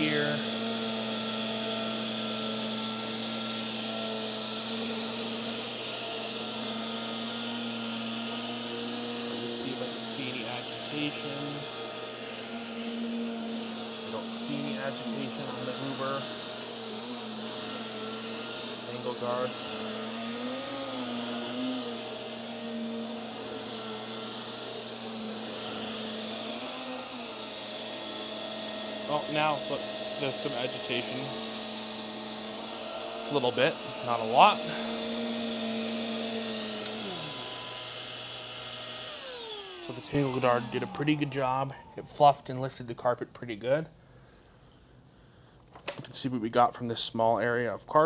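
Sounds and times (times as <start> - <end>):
vacuum cleaner running on carpet: 0.0 - 42.3.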